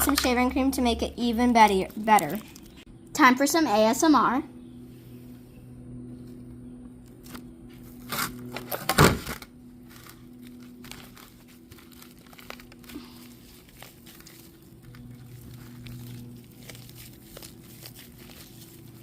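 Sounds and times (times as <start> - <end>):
steady low hum: 0.0 - 19.0
faint crackles: 9.8 - 19.0.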